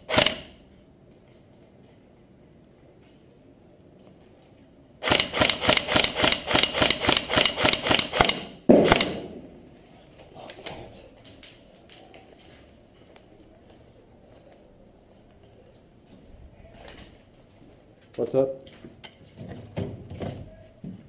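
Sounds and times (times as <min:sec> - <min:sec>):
airsoft gun firing rapidly: 0:00.0 - 0:00.6, 0:05.0 - 0:09.4.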